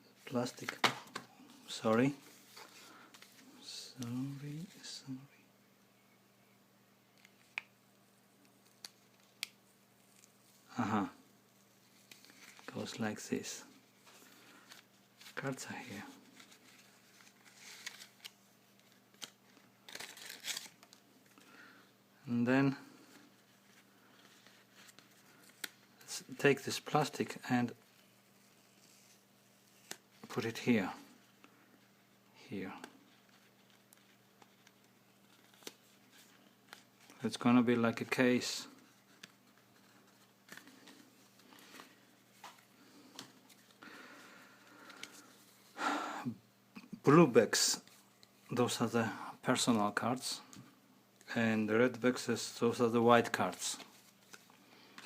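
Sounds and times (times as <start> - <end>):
cards and plastic rustling: 0.2 - 5.1, 8.4 - 11.0, 11.7 - 21.8, 22.8 - 31.9, 32.6 - 45.8, 51.9 - 55.0
packaging rustling: 16.2 - 21.4.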